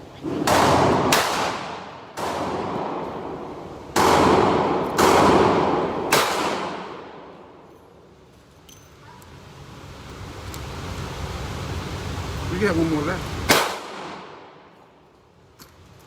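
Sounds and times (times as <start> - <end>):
gunshots with echoing tail: 0.4 - 7.5, 13.5 - 14.6.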